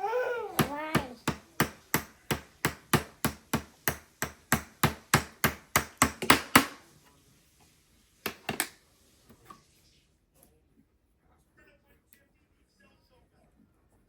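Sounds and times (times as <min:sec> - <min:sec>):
hammer knocking on ice: 0:00.6 - 0:06.7.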